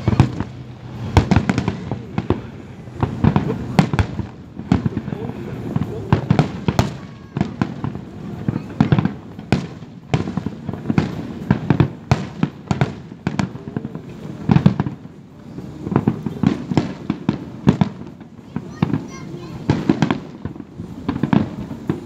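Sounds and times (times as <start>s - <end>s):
fireworks booming thuds: 0.0s - 15.2s
fireworks bangs and cracks: 0.0s - 22.0s.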